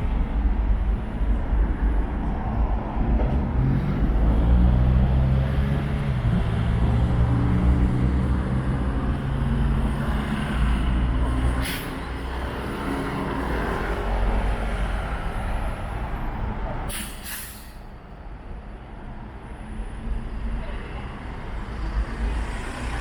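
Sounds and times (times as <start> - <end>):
large vehicle engine rumbling: 0.0 - 23.0
air brakes hissing: 11.5 - 12.1, 16.9 - 17.9.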